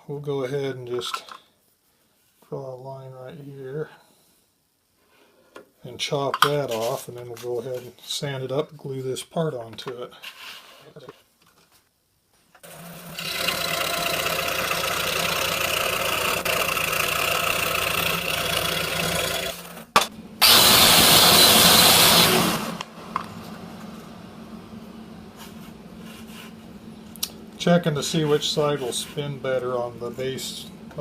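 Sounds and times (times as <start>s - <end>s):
scroll saw cutting wood: 12.7s - 22.9s.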